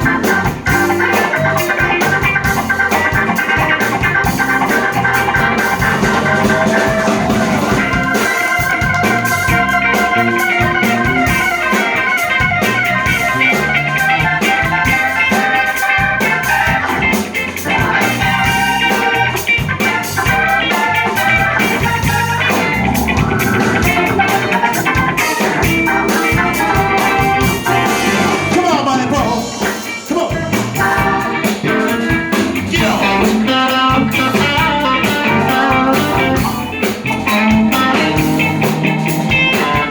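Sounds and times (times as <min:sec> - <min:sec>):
drum kit: 0:00.0 - 0:39.9
guitar lead: 0:00.0 - 0:39.9.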